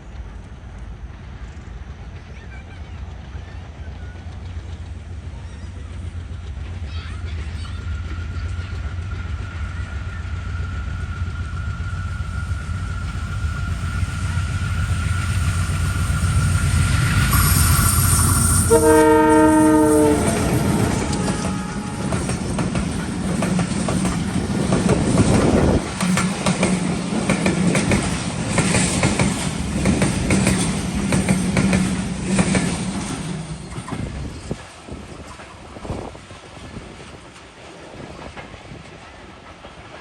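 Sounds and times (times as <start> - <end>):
train rumbling: 0.0 - 40.0
train horn blast: 17.3 - 22.6.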